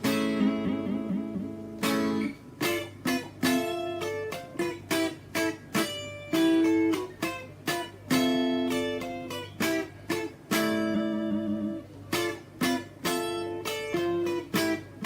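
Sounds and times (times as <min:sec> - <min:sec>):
electric guitar notes and chords: 0:00.0 - 0:15.0
low amp hum: 0:00.0 - 0:15.0.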